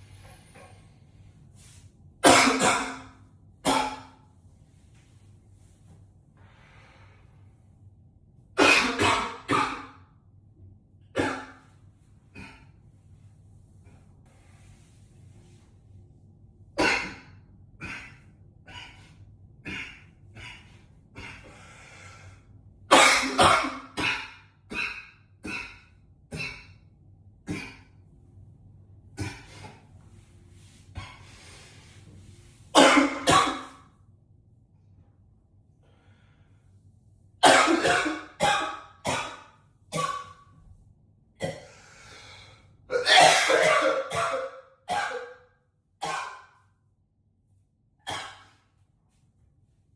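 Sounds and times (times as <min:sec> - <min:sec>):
breaths: 0:06.4 - 0:07.7, 0:20.4 - 0:22.6, 0:35.8 - 0:36.9, 0:41.6 - 0:42.8
man coughing: 0:37.4 - 0:39.4, 0:42.9 - 0:45.3.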